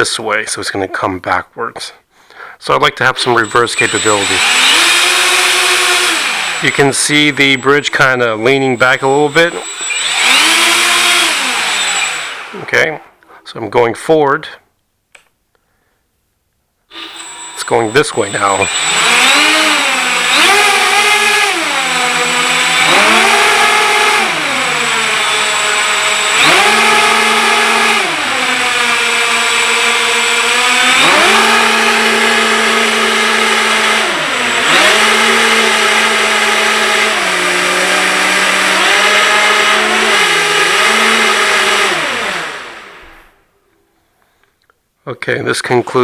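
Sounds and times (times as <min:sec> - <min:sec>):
electric motor whine: 0:03.2 - 0:12.7, 0:16.9 - 0:43.4.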